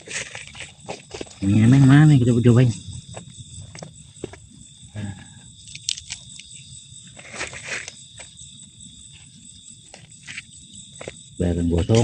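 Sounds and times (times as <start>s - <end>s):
insect drone: 0.0s - 12.0s
brief rustle: 7.2s - 8.3s.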